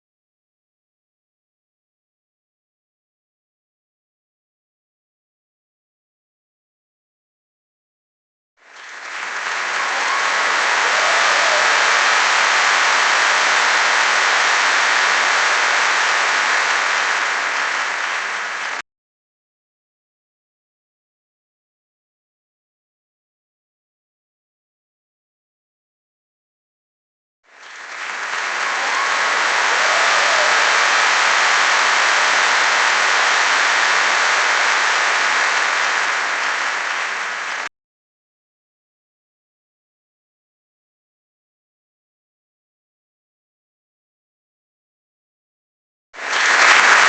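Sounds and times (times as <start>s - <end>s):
crowd applauding: 8.6s - 18.8s, 27.5s - 37.7s, 46.2s - 47.0s
crowd cheering: 8.6s - 18.8s, 27.5s - 37.7s, 46.2s - 47.0s.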